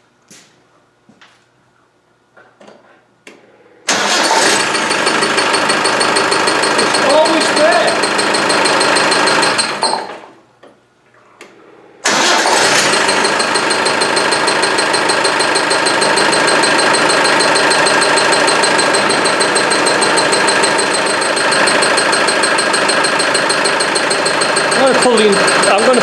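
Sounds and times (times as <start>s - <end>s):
diesel engine running: 3.9s - 9.8s, 12.1s - 26.0s
engine winding down: 3.9s - 10.0s, 12.0s - 26.0s
engine restarting: 3.9s - 10.2s, 12.0s - 26.0s
high chirping from engine: 4.7s - 9.8s, 12.5s - 26.0s.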